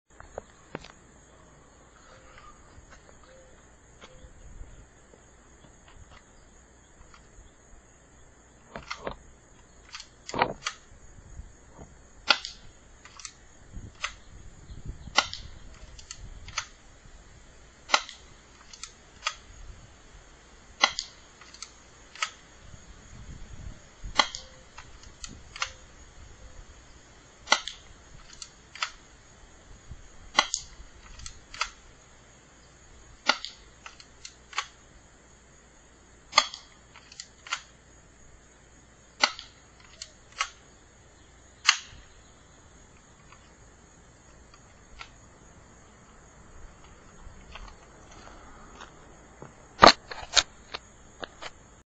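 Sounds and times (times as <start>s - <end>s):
airsoft pistol shots: 12.2s - 13.3s, 15.1s - 15.6s, 17.9s - 19.4s, 20.8s - 21.2s, 24.1s - 24.6s, 27.4s - 27.8s, 30.3s - 31.8s, 33.2s - 33.6s, 36.3s - 36.7s, 39.2s - 39.6s, 41.6s - 42.0s.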